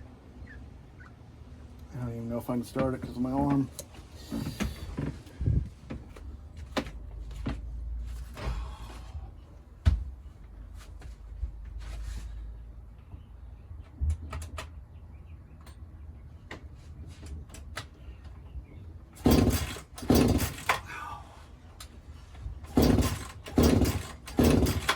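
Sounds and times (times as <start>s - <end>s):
chainsaw starter cord rasping: 19.2s - 21.0s, 22.7s - 24.9s
clicks and knocks handling chainsaw: 19.2s - 21.0s, 22.7s - 24.9s.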